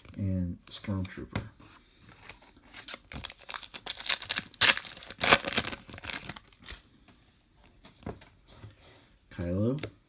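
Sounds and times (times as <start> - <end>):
foil wrapper tearing and crinkling: 2.8 - 6.8.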